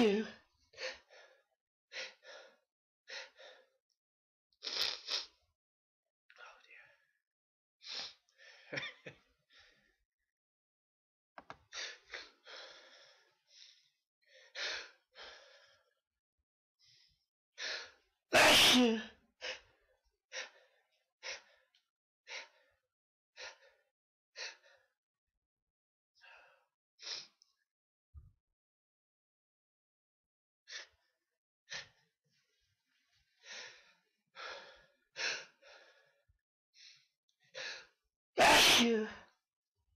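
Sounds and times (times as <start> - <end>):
person sneezing: 18.4 - 19.0, 38.4 - 39.1.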